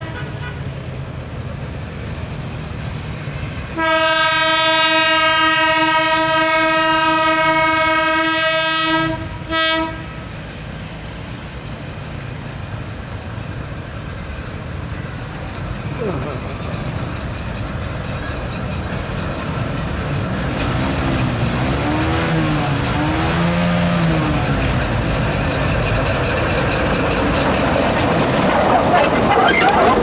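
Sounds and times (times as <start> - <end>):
locomotive horn blasts: 0.0 - 0.8, 3.7 - 10.4, 20.2 - 25.4
locomotive engine rumbling: 0.0 - 30.0.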